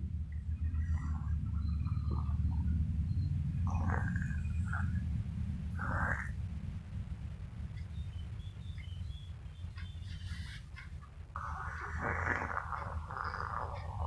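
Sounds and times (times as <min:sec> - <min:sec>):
baby fake-snoring: 0:03.7 - 0:06.4, 0:11.4 - 0:14.0.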